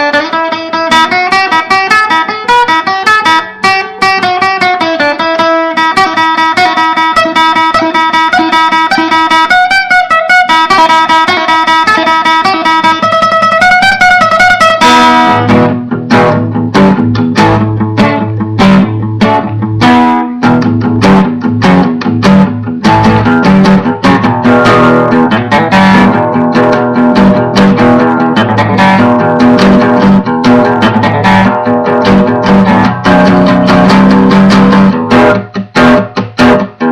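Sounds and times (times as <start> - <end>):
guitar notes with pitch bends: 0.0 - 36.9
strummed guitar chords: 0.0 - 36.9.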